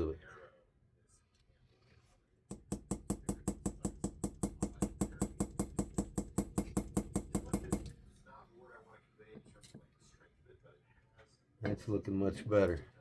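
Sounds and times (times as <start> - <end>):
light hammer taps on metal punch: 2.5 - 8.0.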